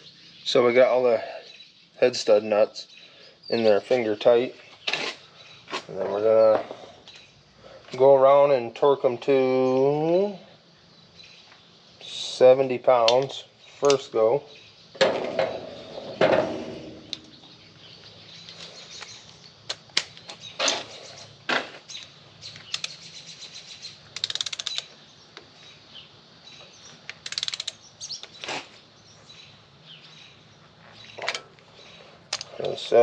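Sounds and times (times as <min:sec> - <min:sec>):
metal wrench clicks and clinks: 0:22.6 - 0:23.0, 0:24.1 - 0:24.9, 0:27.1 - 0:27.8
rapid ratchet clicking: 0:22.7 - 0:23.0, 0:24.1 - 0:24.9, 0:27.1 - 0:27.9.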